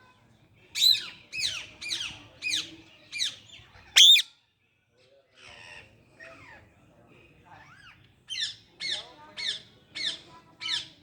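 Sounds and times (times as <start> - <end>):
parrot squawking: 4.0 - 4.2.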